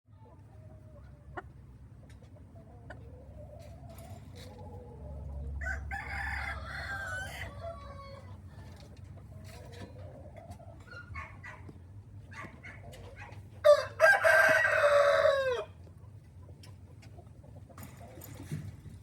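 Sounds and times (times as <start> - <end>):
rooster crowing: 5.6 - 8.2, 13.6 - 15.7.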